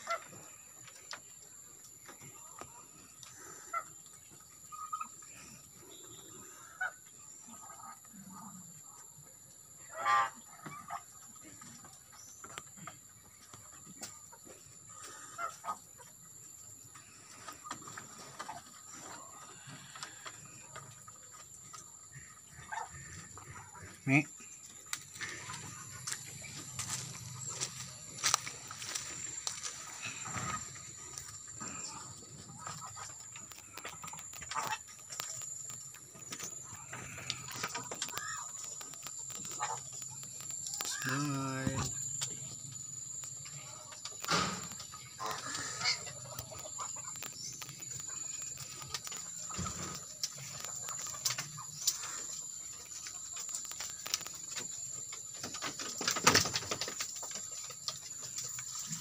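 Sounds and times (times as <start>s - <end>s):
hooves knocking and clattering: 17.0s - 59.0s.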